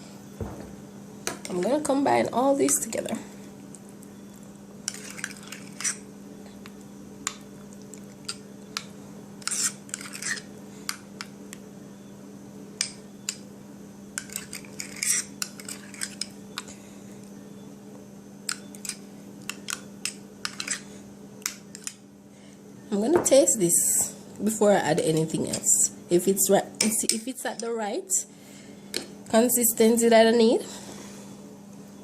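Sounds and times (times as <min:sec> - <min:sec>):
utensil clinking and scraping bowl: 0:04.8 - 0:06.0, 0:07.3 - 0:11.3, 0:14.2 - 0:16.7, 0:18.5 - 0:20.9.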